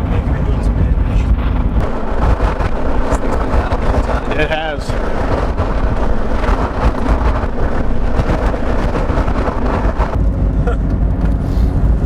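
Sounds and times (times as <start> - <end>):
strong wind buffeting microphone: 0.0 - 12.0.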